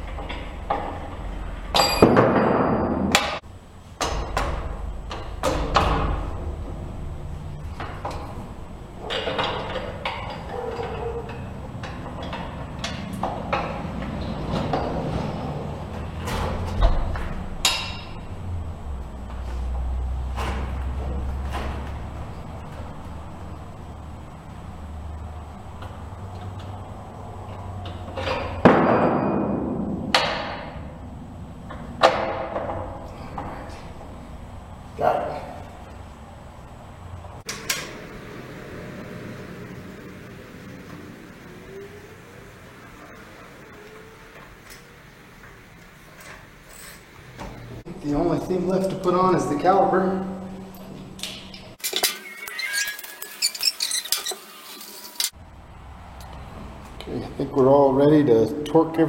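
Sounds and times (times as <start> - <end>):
hammer strikes on metal axle: 17.6 - 18.2.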